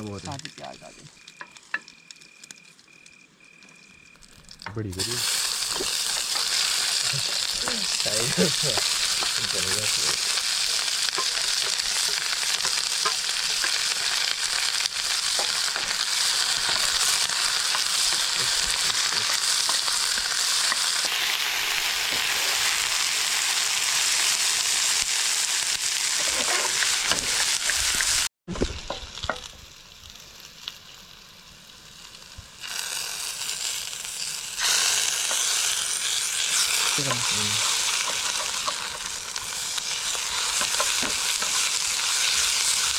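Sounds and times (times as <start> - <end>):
onion sizzling in oil: 0.0 - 42.9
stirring in a pan: 5.0 - 21.2, 35.0 - 42.9.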